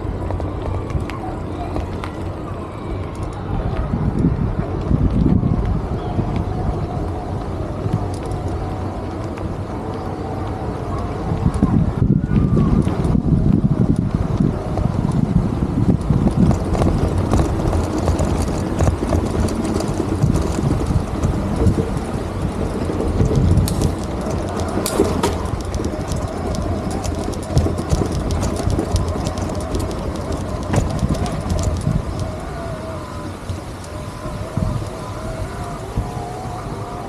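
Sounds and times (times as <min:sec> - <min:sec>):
low traffic rumble: 0:00.0 - 0:37.0
scattered clicks and knocks: 0:15.9 - 0:32.4.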